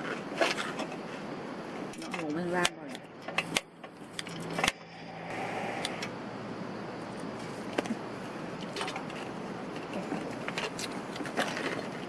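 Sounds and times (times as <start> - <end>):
steady background noise: 0.0 - 12.0
camping gear clicks and knocks: 1.9 - 4.8, 8.6 - 12.0.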